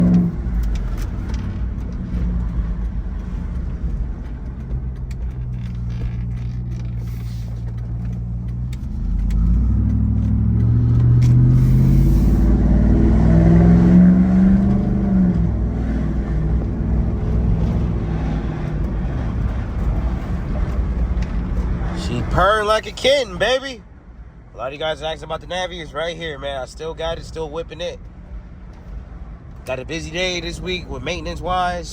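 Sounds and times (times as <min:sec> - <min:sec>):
car engine revving: 0:00.0 - 0:23.1.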